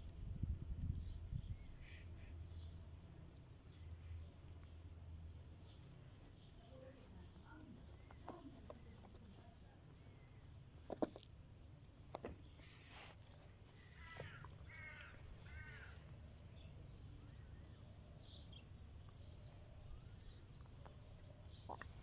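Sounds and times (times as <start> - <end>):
short arched animal calls: 1.8 - 2.3, 13.8 - 16.1.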